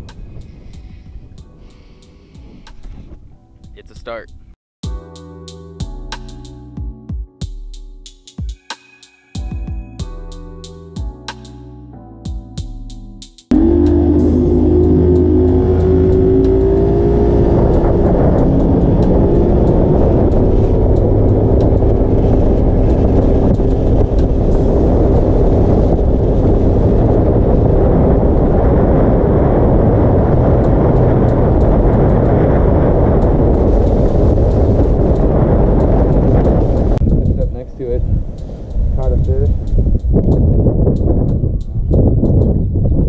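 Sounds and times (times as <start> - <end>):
wind noise: 0.0 - 4.6, 13.5 - 43.0
outboard motor running: 13.5 - 27.3
water noise: 13.5 - 37.4.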